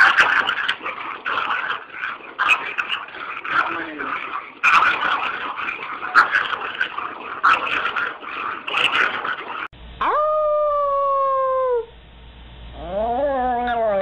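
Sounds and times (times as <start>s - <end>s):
rough irregular noise: 0.0s - 9.7s
dog howling: 10.0s - 11.9s, 12.8s - 14.0s.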